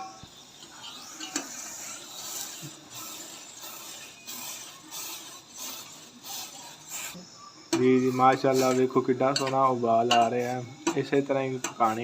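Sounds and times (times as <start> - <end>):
boiling tea hissing: 0.0 - 12.0
spoon stirring a pot: 0.5 - 12.0
spoon clinking against pot: 9.0 - 11.9.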